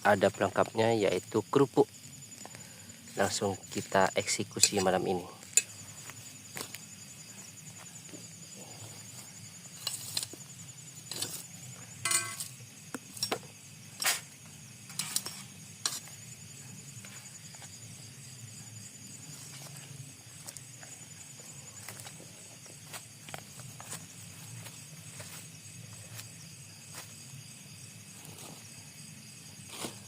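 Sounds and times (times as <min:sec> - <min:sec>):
high insect trill: 0:00.0 - 0:30.0
cutlery and dishes clinking: 0:04.6 - 0:04.9, 0:12.0 - 0:12.5, 0:14.9 - 0:16.0.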